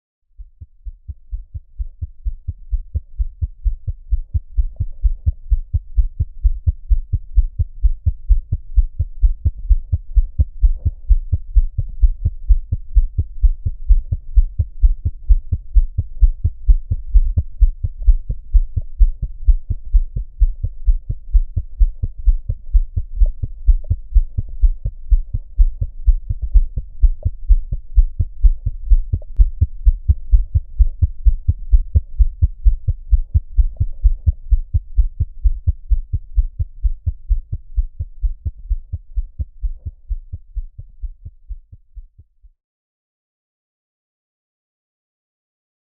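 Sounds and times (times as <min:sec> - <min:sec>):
fetal heartbeat on doppler monitor: 0:00.4 - 0:42.2.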